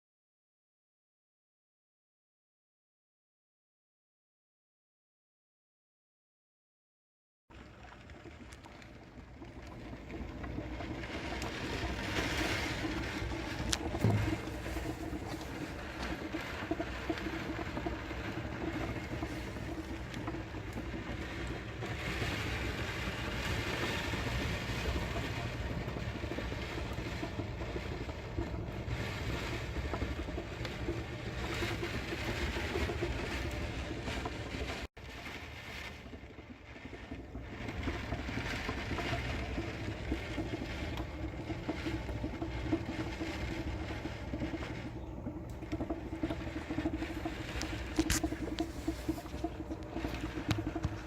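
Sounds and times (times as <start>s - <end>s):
heavy rain: 10.2s - 44.8s, 45.7s - 51.0s.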